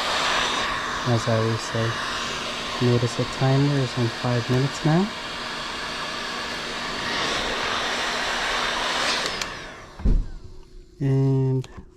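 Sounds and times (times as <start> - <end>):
hot-air tool blowing: 0.0 - 11.9
dull thump: 10.0 - 10.4.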